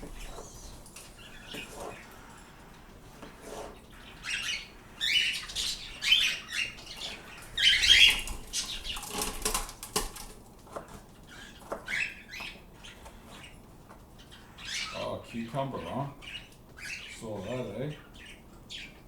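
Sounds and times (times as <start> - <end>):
birds wing flapping: 6.9 - 11.8.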